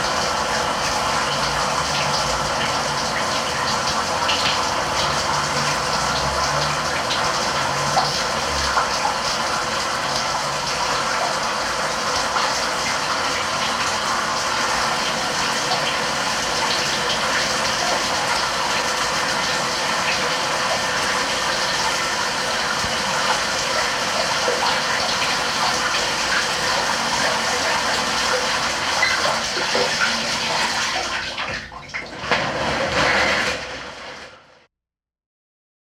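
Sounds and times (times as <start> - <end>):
shower spray running: 0.0 - 31.2.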